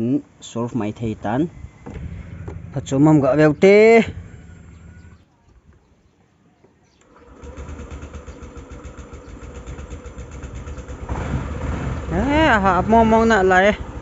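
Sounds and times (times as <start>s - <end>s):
scooter engine running: 1.6s - 5.2s, 7.2s - 14.0s.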